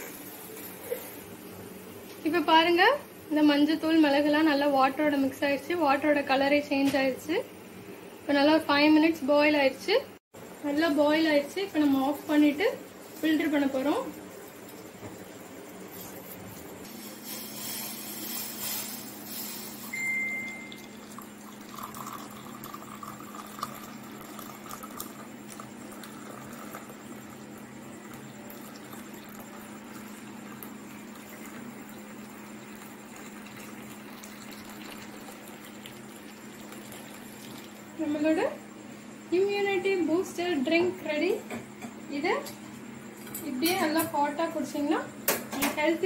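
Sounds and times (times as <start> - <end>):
liquid trickling and splashing: 20.7 - 26.9, 28.2 - 37.9.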